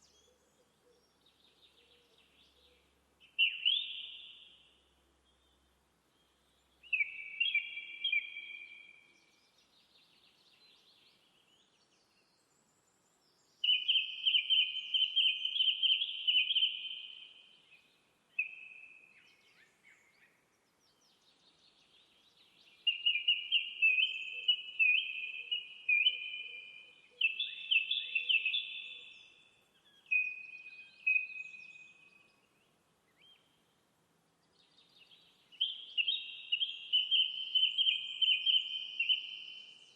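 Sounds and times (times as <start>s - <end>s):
small bird chirping: 0.0s - 4.5s, 21.2s - 32.3s, 34.5s - 39.9s.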